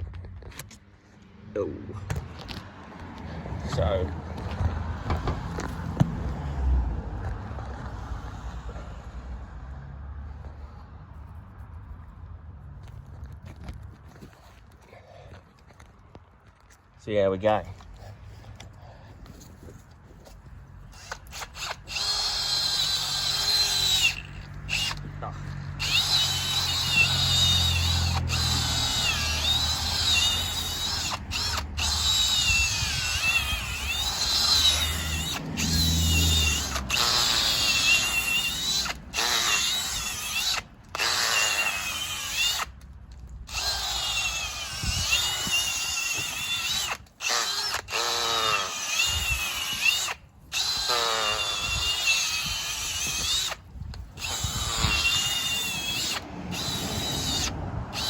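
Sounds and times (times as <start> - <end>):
drill motor whining: 20.9 - 42.8, 43.5 - 58.0.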